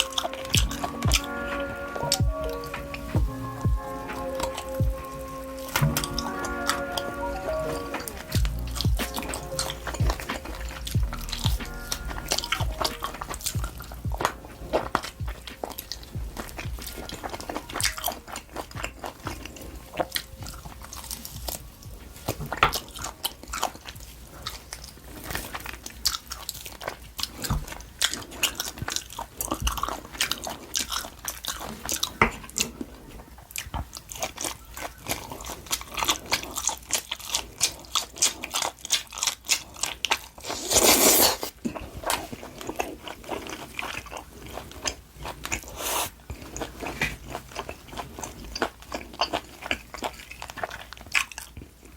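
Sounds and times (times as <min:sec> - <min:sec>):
close biting and chewing: 0:00.0 - 0:51.9.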